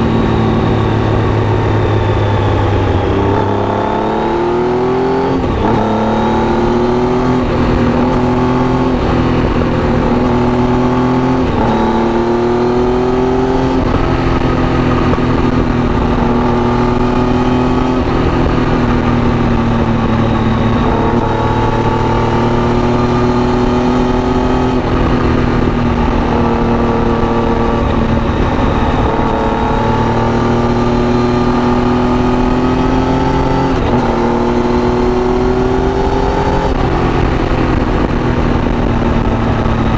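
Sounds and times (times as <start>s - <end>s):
motorcycle engine under load: 0.0s - 39.9s.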